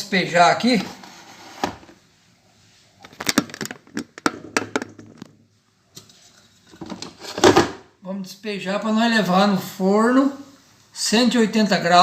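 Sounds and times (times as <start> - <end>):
kitchenware knocks and clicks: 3.3 - 5.3.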